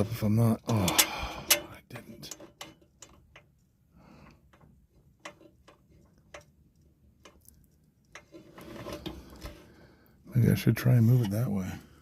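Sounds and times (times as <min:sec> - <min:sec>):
scraping or rustling: 0:08.2 - 0:09.8.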